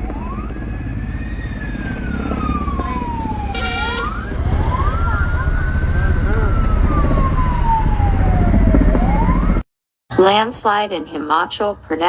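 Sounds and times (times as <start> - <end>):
wailing siren: 0.0 - 9.6.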